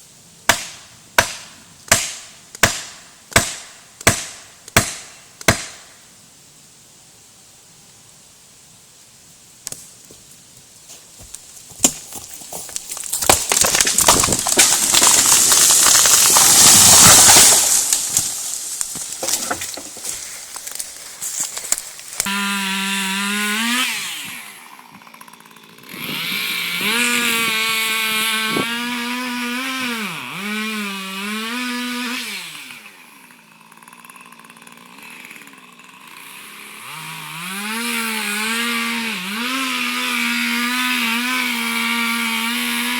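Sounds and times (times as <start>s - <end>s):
wood cracking and crashing: 11.3s - 22.3s
chainsaw engine revving: 13.2s - 19.6s, 22.2s - 42.9s.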